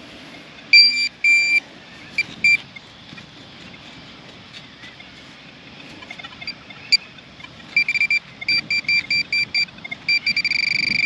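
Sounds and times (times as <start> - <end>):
metal detector beeps: 0.7 - 1.6, 2.2 - 2.6, 7.7 - 11.0.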